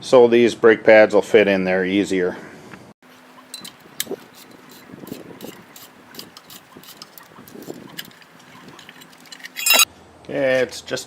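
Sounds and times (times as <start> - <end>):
rattling clatter: 6.2 - 9.9.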